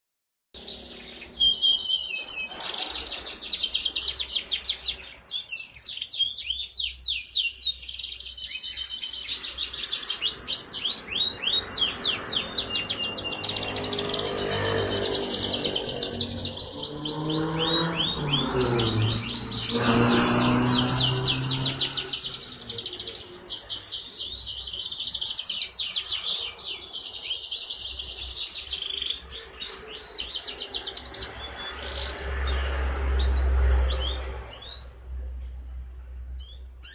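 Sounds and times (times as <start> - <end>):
canary singing trilling song: 0.6 - 35.2, 36.2 - 36.9
low drone: 13.4 - 23.4.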